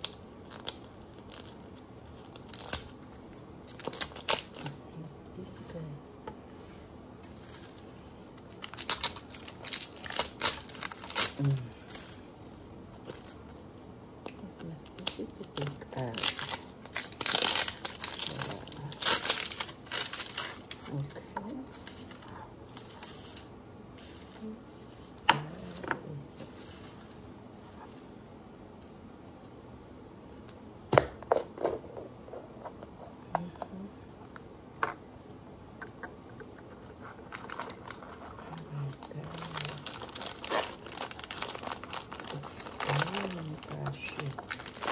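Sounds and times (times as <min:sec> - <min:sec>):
plastic packaging crinkling and tearing: 0:00.0 - 0:04.9, 0:07.2 - 0:24.5, 0:36.7 - 0:44.9.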